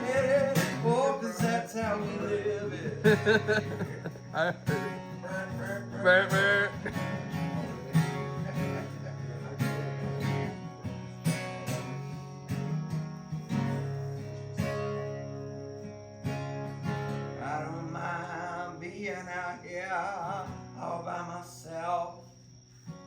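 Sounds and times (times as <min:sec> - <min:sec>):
person singing: 0:00.0 - 0:08.2
strummed acoustic guitar: 0:00.0 - 0:23.0.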